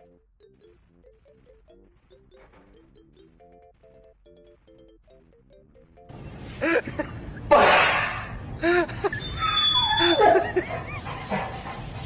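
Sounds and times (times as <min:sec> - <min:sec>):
person laughing: 0:06.6 - 0:07.7, 0:08.6 - 0:11.3.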